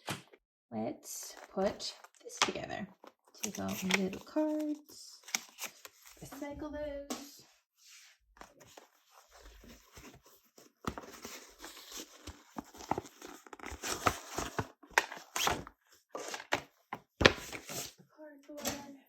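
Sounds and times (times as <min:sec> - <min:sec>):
paper rustling and crinkling: 0:03.0 - 0:06.5, 0:07.9 - 0:18.0.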